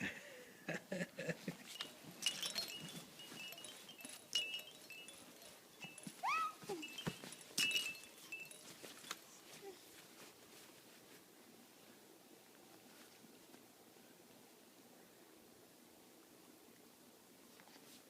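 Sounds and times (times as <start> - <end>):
faint bell ringing: 1.6 - 9.5.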